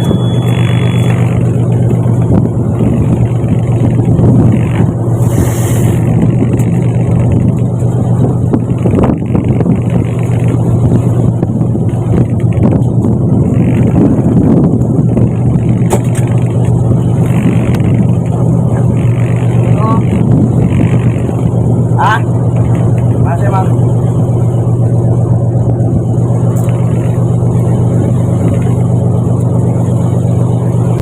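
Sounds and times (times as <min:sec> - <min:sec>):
boat engine humming: 0:00.0 - 0:31.0
wind: 0:00.0 - 0:31.0
short hiss: 0:05.2 - 0:06.0.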